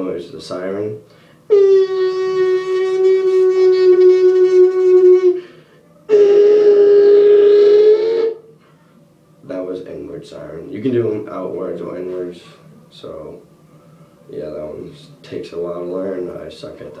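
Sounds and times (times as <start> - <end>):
beatboxer inward siren whistle: 1.5 - 5.5, 6.1 - 8.4.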